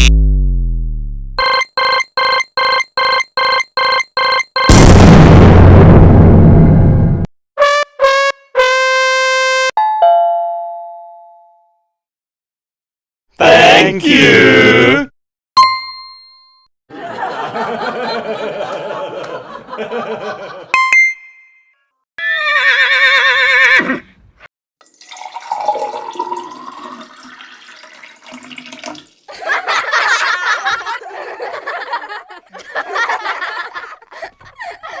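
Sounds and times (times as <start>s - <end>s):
short sound effects: 0.0s - 7.3s
bell-like ding: 9.8s - 11.8s, 15.6s - 16.6s, 20.8s - 21.8s.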